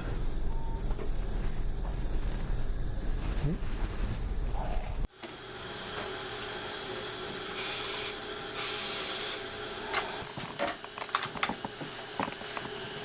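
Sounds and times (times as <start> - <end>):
steady hum: 0.0 - 5.1
compressed air hissing: 7.5 - 9.5.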